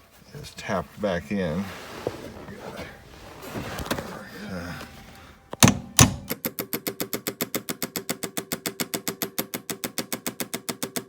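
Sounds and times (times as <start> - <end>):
hammer tapping metal: 5.6 - 6.3.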